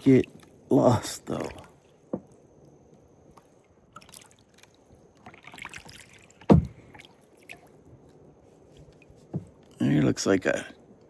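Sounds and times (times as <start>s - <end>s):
paddle splashing water: 1.3s - 2.3s, 3.3s - 7.9s.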